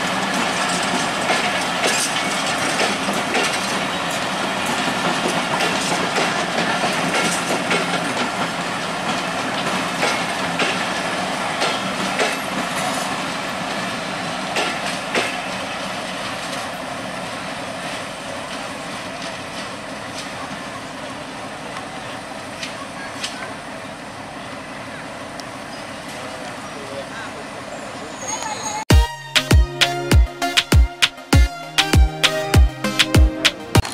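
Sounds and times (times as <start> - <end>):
train wheels clicking over rail joints: 0.0 - 16.8, 17.8 - 20.6
train rumble: 0.0 - 28.9.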